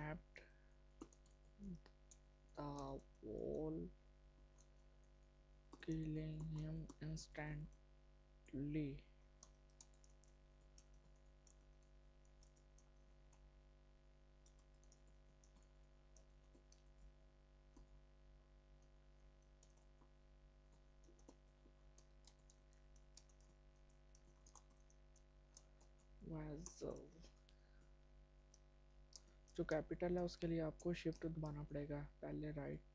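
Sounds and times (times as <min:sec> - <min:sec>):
low electrical hum: 0:00.0 - 0:32.9
typing on computer keyboard: 0:01.0 - 0:03.2, 0:09.4 - 0:13.4, 0:14.4 - 0:17.1, 0:18.8 - 0:20.1, 0:20.7 - 0:27.0.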